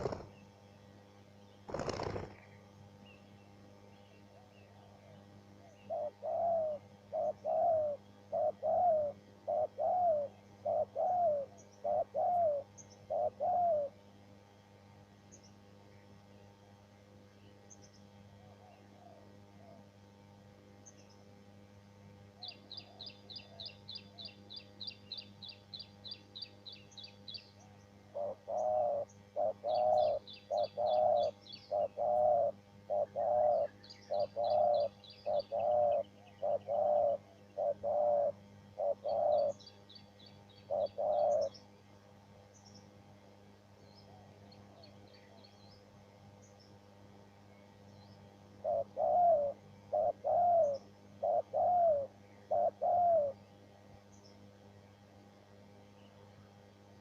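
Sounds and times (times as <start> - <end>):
dove cooing: 0.0 - 0.4, 1.7 - 2.6, 5.8 - 14.0, 28.1 - 39.7, 40.6 - 41.6, 48.6 - 53.4
small bird chirping trill: 22.4 - 41.7.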